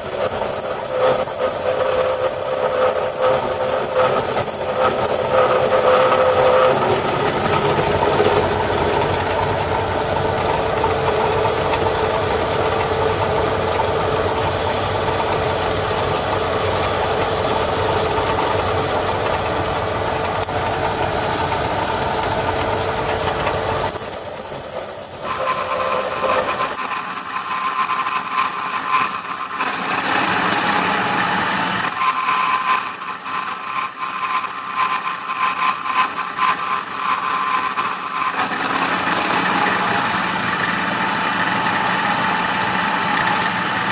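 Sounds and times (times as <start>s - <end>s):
milling cutter cutting metal: 0.0s - 26.8s.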